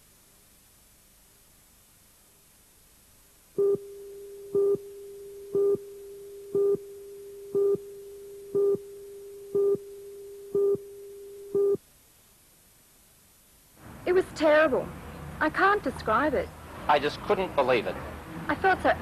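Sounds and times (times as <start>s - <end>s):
steady electronic tone: 3.6s - 11.8s.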